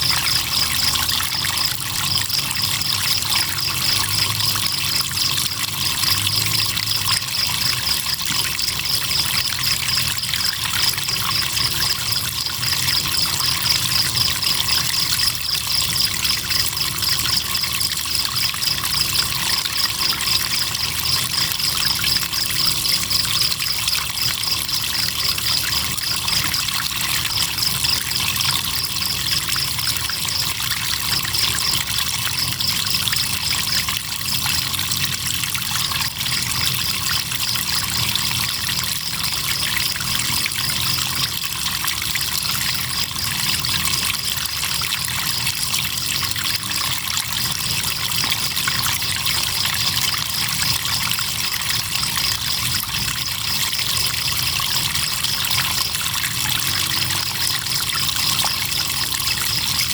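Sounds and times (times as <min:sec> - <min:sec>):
crickets chirping: 0:00.0 - 0:59.9
river water trickling: 0:00.0 - 0:59.9.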